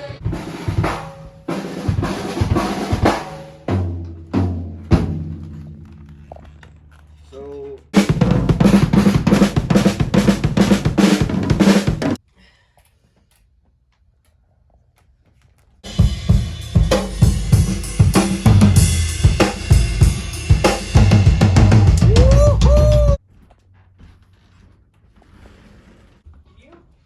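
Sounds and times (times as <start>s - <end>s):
rock drum kit played hard: 0.0s - 6.0s, 8.0s - 12.2s, 15.9s - 23.2s.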